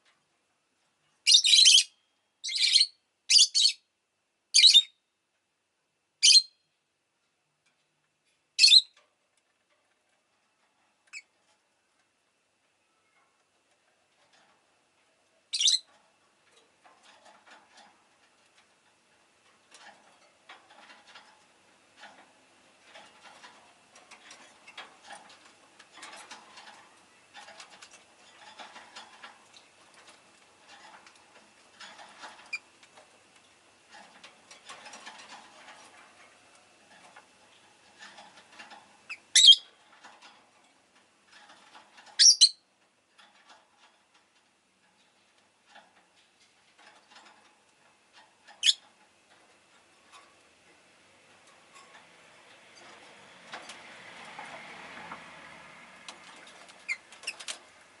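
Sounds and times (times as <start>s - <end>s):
lovebird clicking and chirping: 15.5s - 15.9s, 42.2s - 42.6s.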